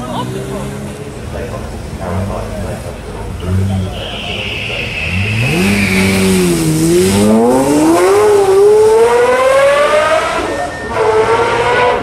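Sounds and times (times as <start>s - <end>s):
car engine accelerating hard: 0.0s - 12.0s.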